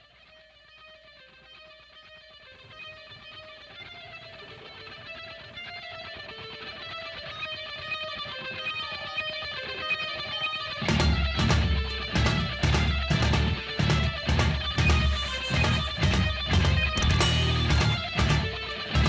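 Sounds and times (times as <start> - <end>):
picked guitar notes: 1.3 - 19.0
full band playing: 10.9 - 19.0.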